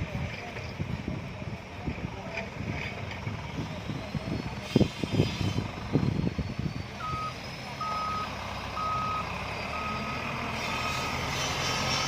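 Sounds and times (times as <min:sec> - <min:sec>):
diesel engine rumble: 0:00.0 - 0:12.0
truck reversing alarm beeping: 0:06.0 - 0:12.0.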